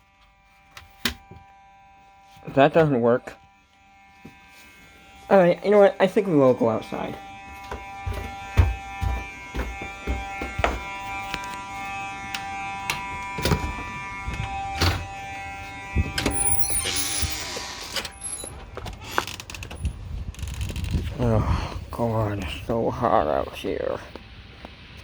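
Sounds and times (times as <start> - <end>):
fire alarm horn buzzing: 0.0 - 20.5
footsteps and knocks: 6.4 - 16.3
door opening: 12.3 - 15.2, 16.0 - 21.1
short high squeaks: 16.2 - 20.9.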